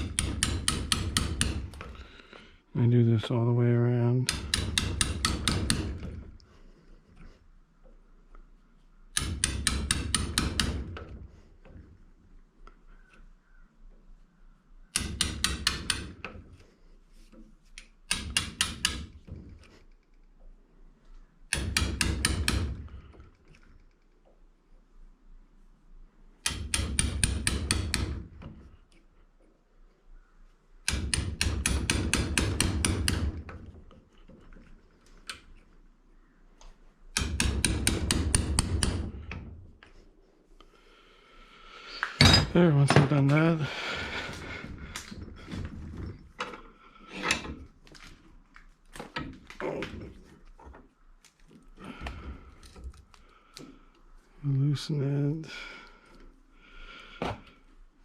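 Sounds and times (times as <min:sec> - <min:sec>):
hammer striking metal punch: 0:04.3 - 0:06.0, 0:09.2 - 0:10.9.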